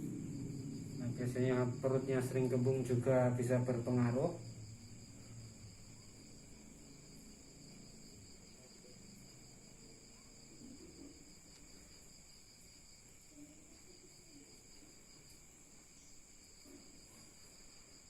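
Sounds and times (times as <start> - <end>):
high-pitched insect drone: 0.0 - 10.5.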